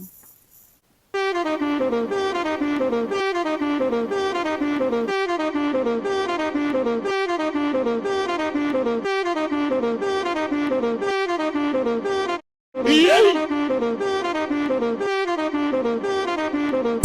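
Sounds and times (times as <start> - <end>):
jazzy saxophone loop: 1.2 - 5.3.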